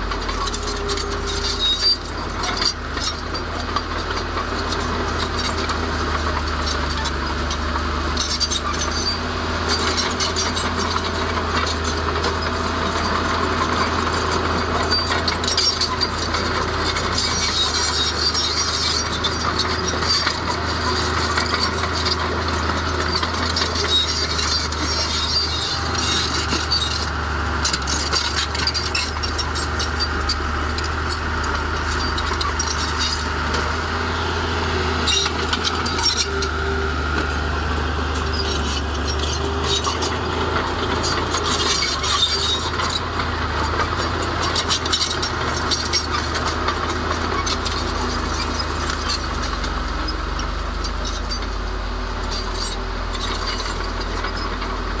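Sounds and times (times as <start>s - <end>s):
bulldozer diesel engine: 0.0s - 55.0s
steel tracks clanking: 9.8s - 49.8s.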